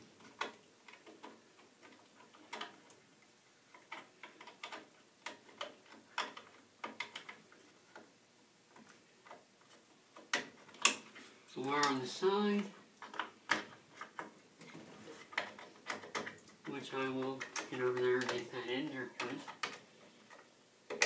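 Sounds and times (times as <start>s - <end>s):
wire connectors clicking: 13.0s - 21.0s.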